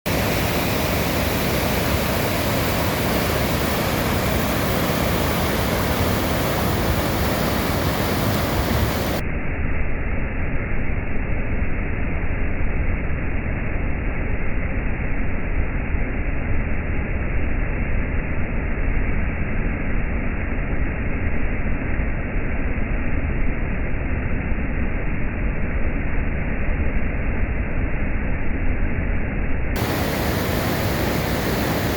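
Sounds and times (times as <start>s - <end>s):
waterfall roaring: 0.1s - 9.2s, 29.8s - 31.9s.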